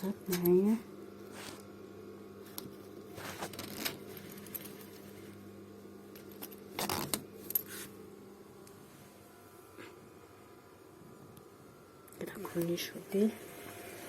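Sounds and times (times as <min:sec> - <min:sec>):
faint steady hum: 0:00.0 - 0:14.0
fabric cover rustling: 0:01.3 - 0:01.6, 0:03.0 - 0:05.3.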